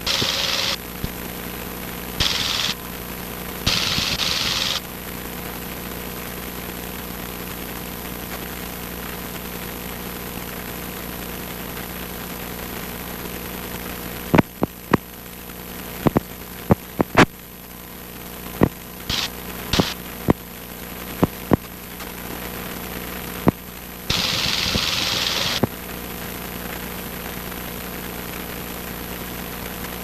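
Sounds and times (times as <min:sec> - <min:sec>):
hiss: 0:00.0 - 0:00.8, 0:02.2 - 0:02.8, 0:03.7 - 0:04.8, 0:19.1 - 0:20.0, 0:24.1 - 0:25.6
airplane engine and propeller droning: 0:00.0 - 0:01.1, 0:24.1 - 0:25.6.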